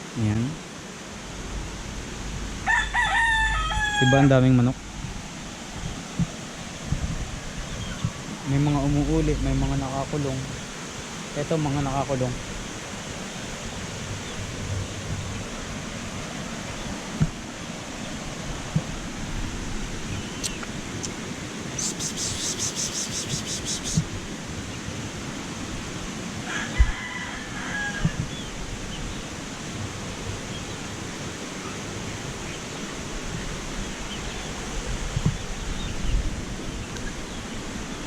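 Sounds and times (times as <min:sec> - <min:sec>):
steady rushing hiss: 0:00.0 - 0:38.0
chickens calling: 0:01.1 - 0:17.1, 0:19.9 - 0:24.9.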